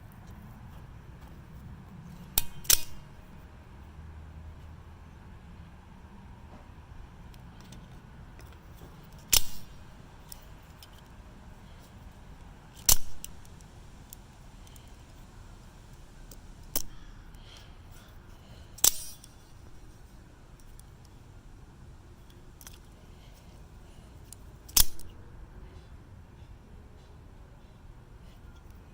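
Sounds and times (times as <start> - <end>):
knife blade metallic snaps: 2.4 - 3.2, 9.3 - 9.9, 12.8 - 13.5, 16.7 - 17.0, 18.8 - 19.5, 24.7 - 25.1.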